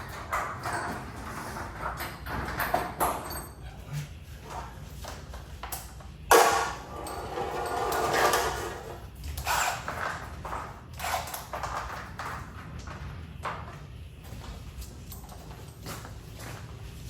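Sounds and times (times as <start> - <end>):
garage door hardware scraping: 0.0 - 5.0, 6.3 - 12.6
garage door rolling: 0.0 - 17.0.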